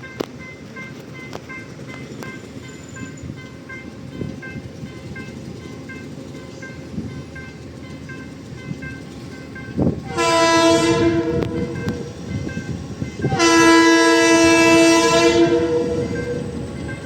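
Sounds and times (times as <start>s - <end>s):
locomotive air horn blasts: 10.0s - 16.7s.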